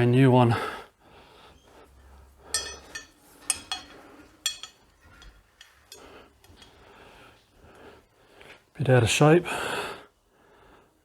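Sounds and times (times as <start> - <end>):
metallic clinks of metal parts: 2.5 - 6.8.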